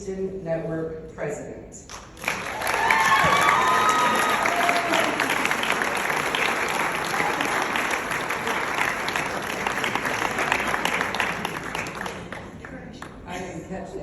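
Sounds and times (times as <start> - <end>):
audience applauding: 1.9 - 12.8.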